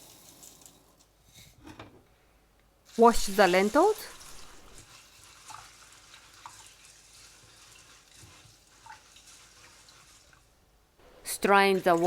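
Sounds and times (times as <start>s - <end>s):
lentils swishing in water: 2.9s - 12.0s.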